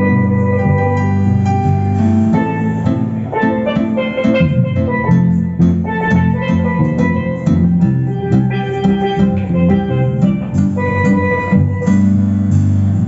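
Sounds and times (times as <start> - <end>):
steady drumbeat: 0.0 - 12.7
live band playing: 0.0 - 13.0.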